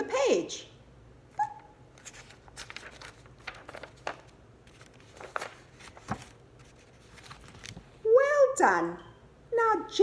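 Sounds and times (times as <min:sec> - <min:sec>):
paper pages rustling: 0:01.9 - 0:08.0.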